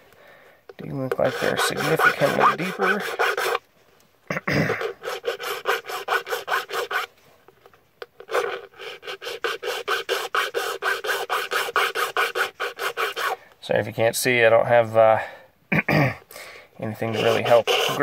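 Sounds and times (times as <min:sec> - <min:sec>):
hand file rasping on key: 0:00.9 - 0:03.6, 0:04.8 - 0:07.1, 0:08.2 - 0:13.4, 0:17.0 - 0:18.0.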